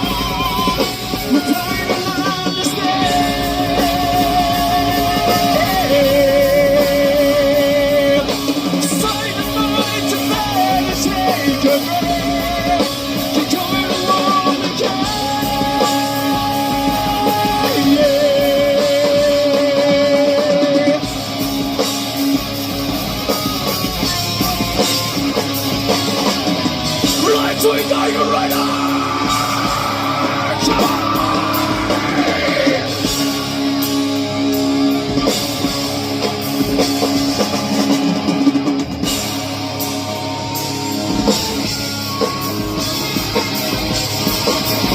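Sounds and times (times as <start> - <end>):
person singing: 0.0 - 21.1, 27.0 - 33.6
electric guitar: 0.0 - 44.9.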